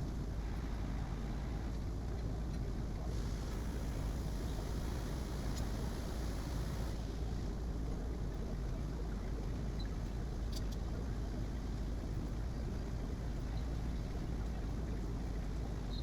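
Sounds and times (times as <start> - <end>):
faint click: 5.4 - 5.8.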